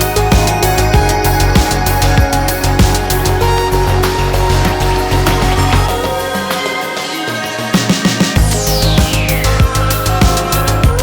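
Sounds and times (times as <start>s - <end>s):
heavy bass: 0.0s - 6.6s, 8.4s - 11.0s
electronic music: 0.0s - 11.0s
drum hits: 4.5s - 6.4s.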